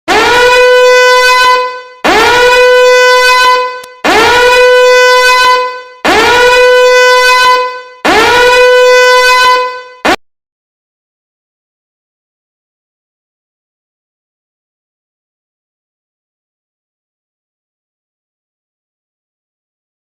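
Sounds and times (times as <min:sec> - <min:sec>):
horn-like alert tone blasts: 0:00.1 - 0:10.2.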